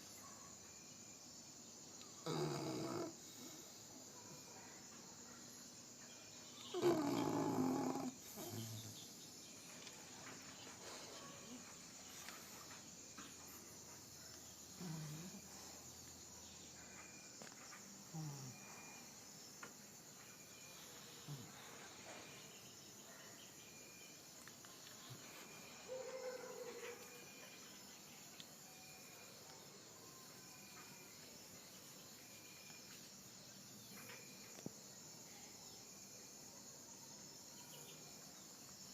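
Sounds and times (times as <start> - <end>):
faint high chirring: 0.0 - 38.9
puppy snoring: 2.2 - 3.6, 6.7 - 9.0, 14.8 - 15.6.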